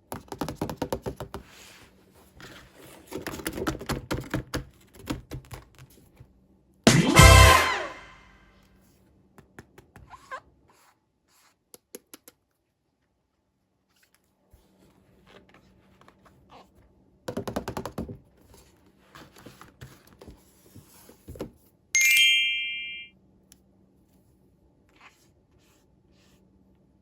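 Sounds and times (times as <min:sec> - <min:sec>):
bright chime-like ding: 0:22.0 - 0:23.1.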